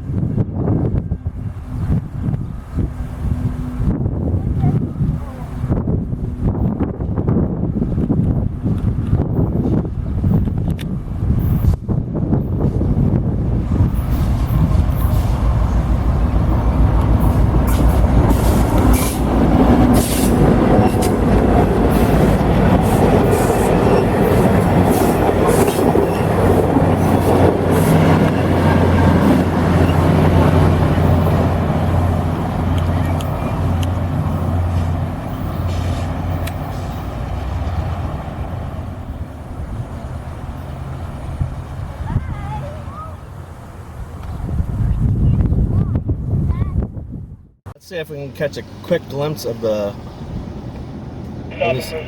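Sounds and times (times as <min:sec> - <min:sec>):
train rumbling: 0:00.0 - 0:52.0
low engine drone: 0:13.2 - 0:42.0, 0:51.0 - 0:52.0
rail clicks: 0:13.4 - 0:41.7.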